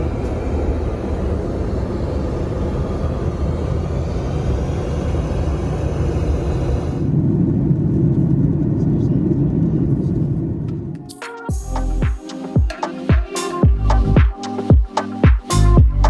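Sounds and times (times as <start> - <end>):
jet airliner engines roaring: 0.0 - 11.0.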